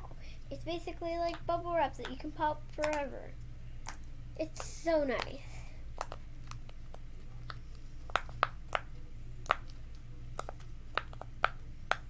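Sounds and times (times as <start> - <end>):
fidget toy bubbles popping: 6.0 - 9.8, 10.4 - 12.0.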